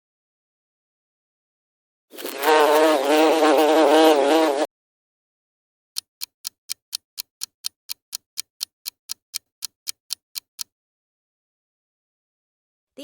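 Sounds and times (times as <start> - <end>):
clock ticking: 6.0 - 10.7.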